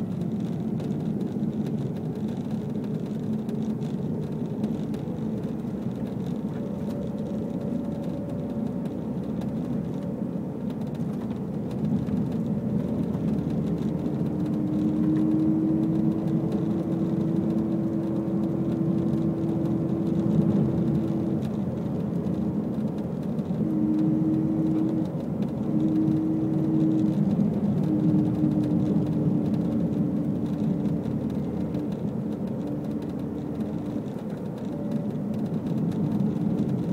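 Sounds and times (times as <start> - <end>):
car road and drivetrain noise: 0.0 - 36.9.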